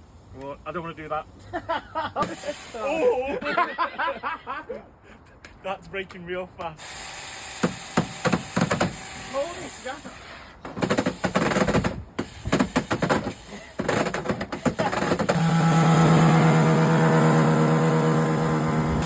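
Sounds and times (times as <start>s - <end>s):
chainsaw cutting into tv: 10.8s - 19.0s
chainsaw running at high rev: 14.8s - 19.0s.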